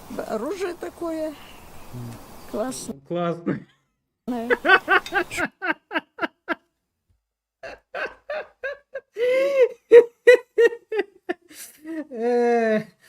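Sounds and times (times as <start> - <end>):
person laughing: 4.4 - 6.6, 7.6 - 13.0.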